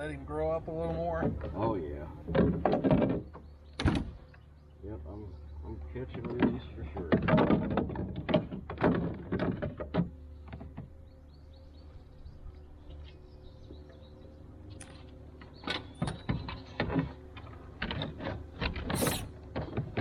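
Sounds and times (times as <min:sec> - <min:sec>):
brief hiss: 0:18.9 - 0:19.3.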